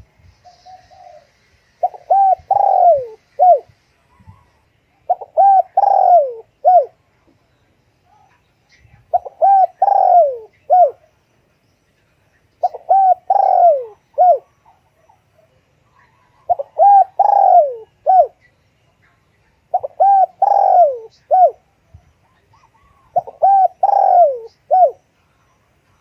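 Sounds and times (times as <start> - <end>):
dove cooing: 0.5 - 7.0, 9.1 - 11.0, 12.6 - 18.4, 19.7 - 25.1.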